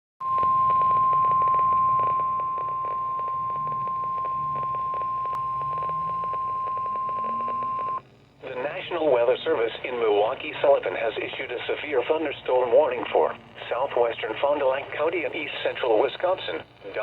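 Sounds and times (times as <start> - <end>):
steady high warning beep: 0.2 - 8.0
radio static crackle: 0.2 - 17.0.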